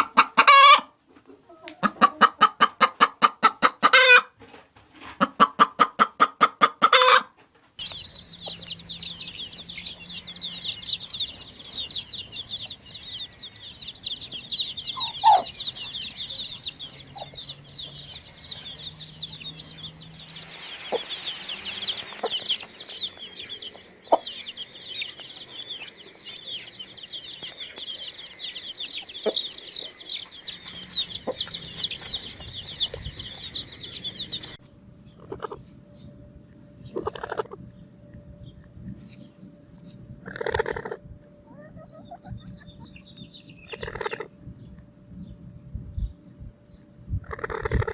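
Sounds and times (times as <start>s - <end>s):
chicks cheeping: 0.0s - 4.4s, 5.0s - 47.9s
hen clucking: 0.0s - 4.4s, 5.0s - 35.7s, 36.9s - 37.7s, 40.2s - 44.4s, 47.2s - 47.9s
lower bird call: 7.8s - 34.6s, 40.2s - 47.9s.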